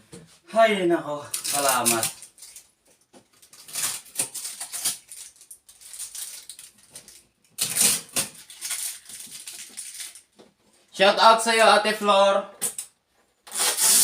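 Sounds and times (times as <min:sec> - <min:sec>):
packaging rustling and crackling: 0:01.3 - 0:10.4.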